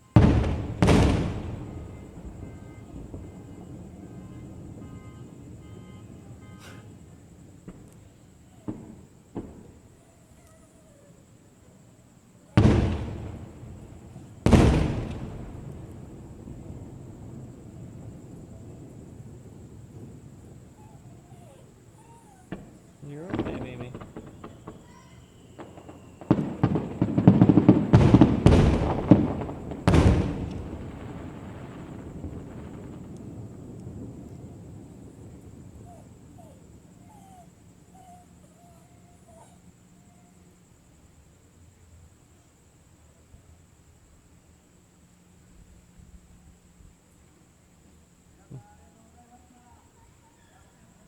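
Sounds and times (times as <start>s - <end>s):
fireworks popping: 0.0s - 39.8s
fireworks booming: 0.0s - 42.2s.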